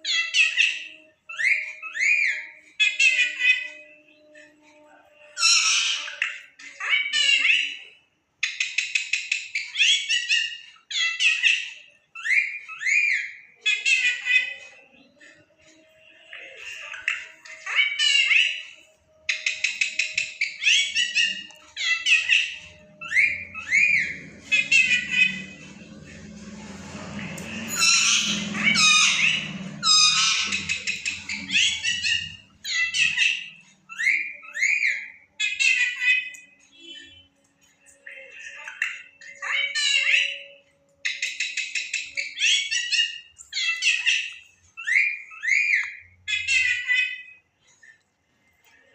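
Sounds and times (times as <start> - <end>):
parrot whistling and chattering: 16.2 - 37.2, 37.8 - 47.9.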